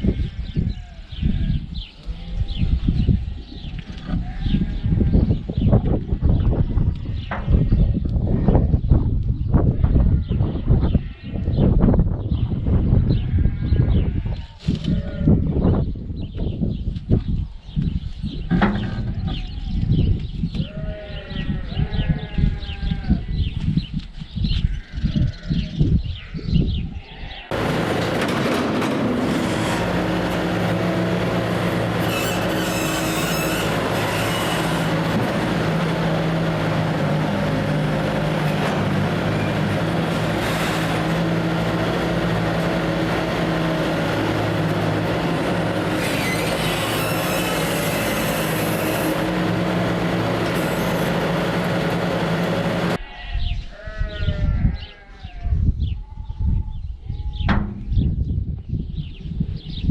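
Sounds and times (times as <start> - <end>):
farm machine engine hum: 27.5 - 53.0
loud mechanical rattling: 27.5 - 53.0.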